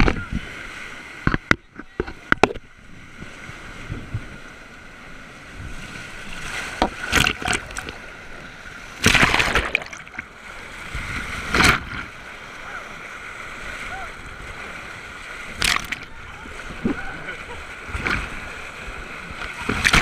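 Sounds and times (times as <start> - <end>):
water splashes: 0.0 - 20.0
whitewater rushing: 8.9 - 20.0.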